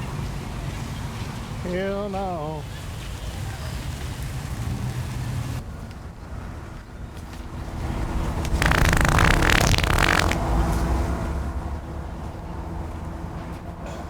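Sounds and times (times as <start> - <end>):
wind: 0.0 - 14.0
wet fart sound: 8.4 - 10.5.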